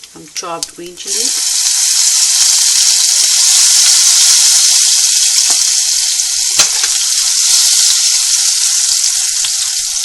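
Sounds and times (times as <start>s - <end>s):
food sizzling in hot oil: 0.0s - 10.0s.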